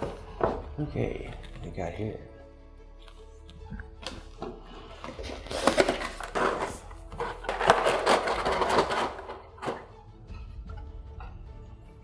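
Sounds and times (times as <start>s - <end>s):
packaging rustling and crinkling: 4.0s - 9.8s.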